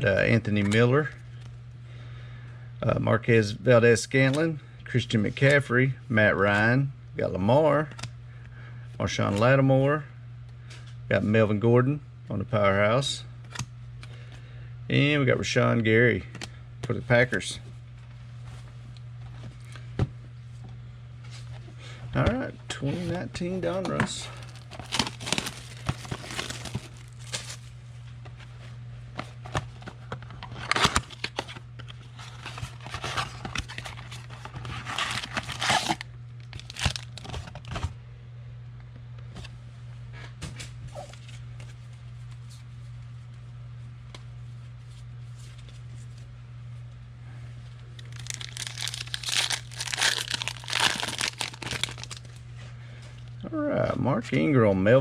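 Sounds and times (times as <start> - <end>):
steady low hum: 0.0 - 55.0
wrappers tearing and crinkling: 24.3 - 27.7, 30.5 - 37.6, 48.0 - 52.4.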